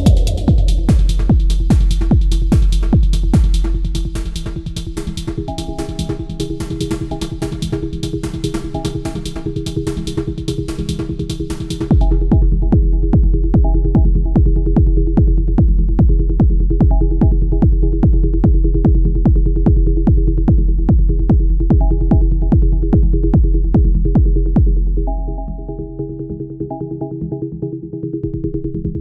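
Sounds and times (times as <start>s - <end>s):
low synth drone: 0.0s - 2.6s
techno kick drum: 0.0s - 25.1s.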